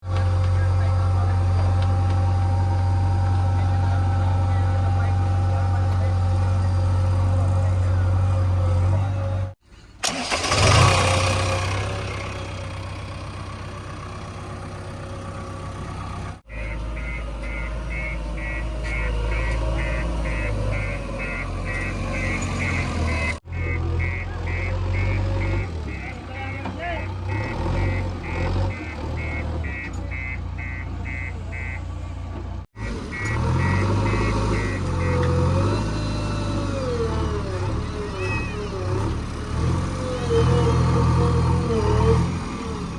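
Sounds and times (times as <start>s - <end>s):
backhoe diesel engine running: 0.0s - 42.9s
reversing alarm beeping: 16.5s - 26.6s, 27.3s - 31.8s, 32.8s - 36.4s.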